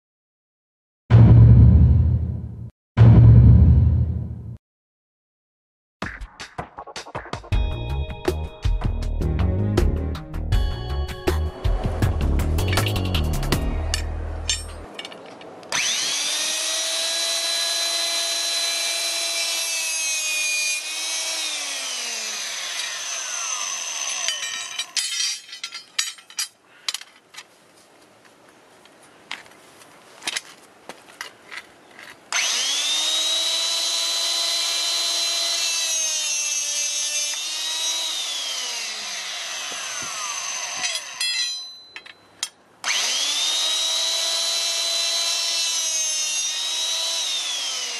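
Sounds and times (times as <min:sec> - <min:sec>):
metal knocks and clinks: 0:13.9 - 0:15.5, 0:24.2 - 0:27.3, 0:40.8 - 0:42.6
hydraulic cutter motor whining: 0:15.7 - 0:24.7, 0:32.3 - 0:41.2, 0:42.8 - 0:47.9.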